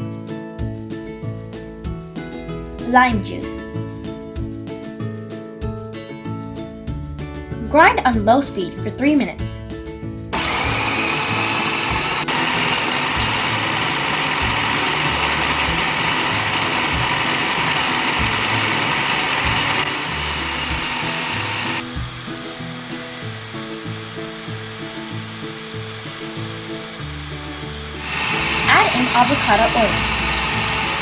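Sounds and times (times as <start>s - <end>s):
background music with steady beat: 0.0s - 31.0s
food processor motor grinding: 10.4s - 31.0s.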